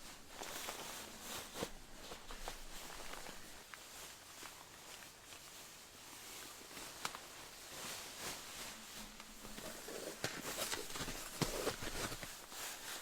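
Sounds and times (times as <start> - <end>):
rustles and sharp clicks: 6.4 - 13.0
footsteps crunching in snow: 6.6 - 13.0.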